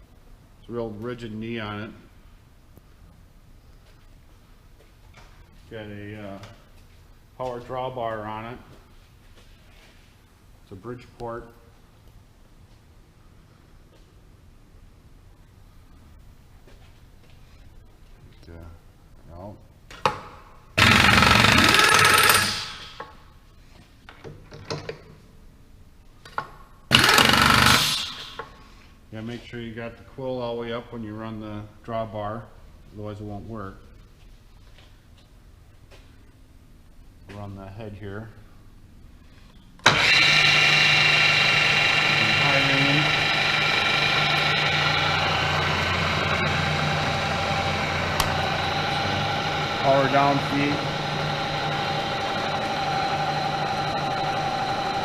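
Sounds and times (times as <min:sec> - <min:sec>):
milling machine hum: 0:20.8 - 0:22.9, 0:26.9 - 0:28.3, 0:39.9 - 0:55.0
power drawbar hammering: 0:20.8 - 0:23.1, 0:26.9 - 0:28.5, 0:39.8 - 0:55.0.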